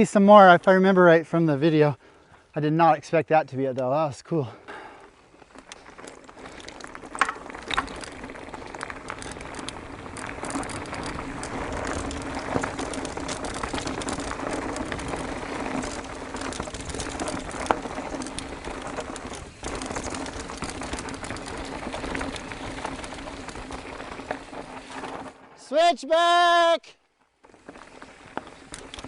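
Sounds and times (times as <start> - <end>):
bike rattling: 4.6 - 25.6, 27.2 - 29.0
bike tyres grinding over rubble: 4.7 - 25.6, 27.2 - 29.0
bike knocking on rocks: 5.4 - 25.3
freewheeling hub buzz: 5.4 - 25.4.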